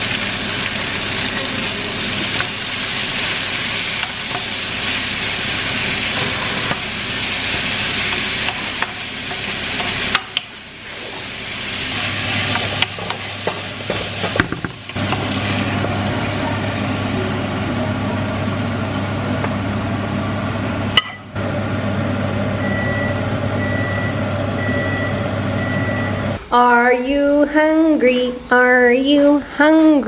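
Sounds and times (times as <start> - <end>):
food sizzling in oil: 0.0 - 18.8.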